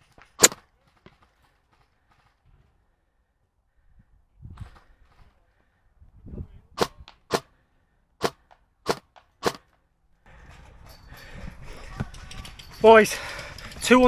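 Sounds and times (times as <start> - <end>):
airsoft gun shots: 6.8 - 7.5, 8.2 - 9.6.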